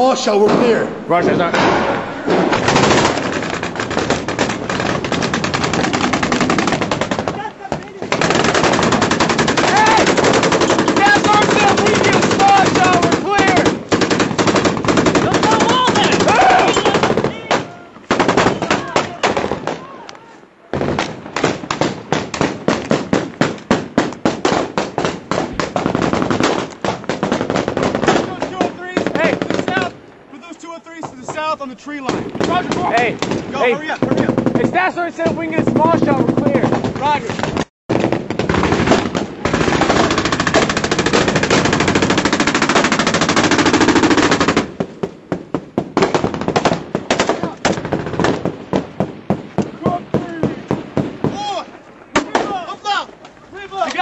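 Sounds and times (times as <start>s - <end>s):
machine-gun and rifle fire: 1.4s - 19.8s, 20.7s - 29.9s, 32.1s - 34.9s, 35.6s - 51.3s.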